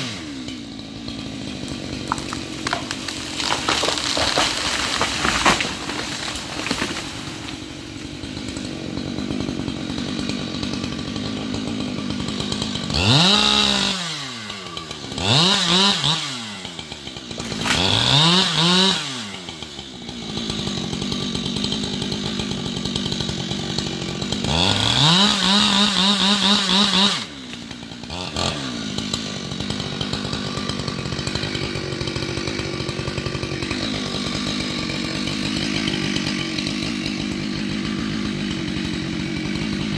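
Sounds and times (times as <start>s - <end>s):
chainsaw idling and revving: 0.0s - 39.9s.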